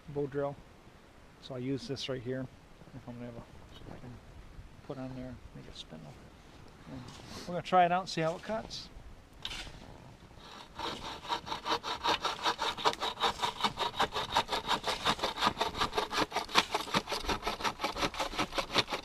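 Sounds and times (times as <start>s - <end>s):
handsaw cutting wood: 10.4s - 19.0s.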